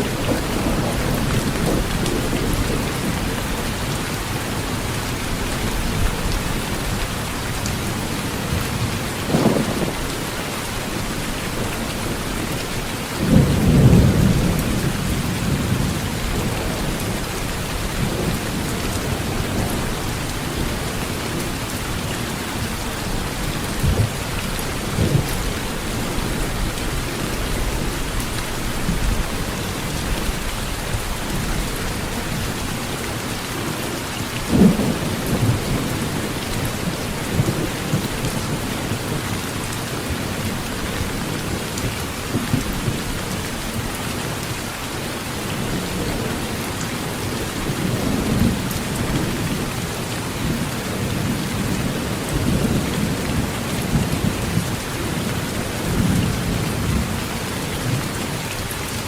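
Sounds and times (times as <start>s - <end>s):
thunder rumbling: 0.0s - 12.5s, 13.2s - 22.0s
heavy rain on a tin roof: 0.0s - 59.0s.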